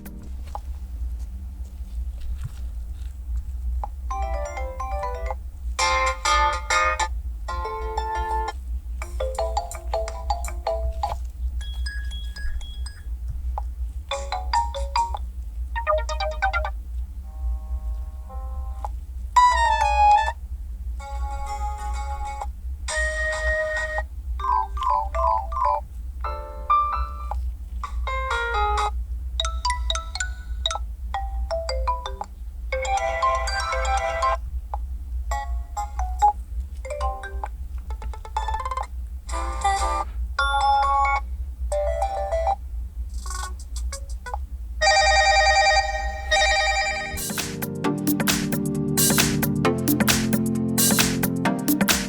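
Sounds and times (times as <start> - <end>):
steady low hum: 0.0 - 52.0
phone ringtone melodies: 4.1 - 7.0, 9.2 - 13.1, 14.1 - 15.2, 15.8 - 18.8, 29.4 - 34.4, 44.8 - 52.0
ringtones from phone speaker: 44.8 - 47.4.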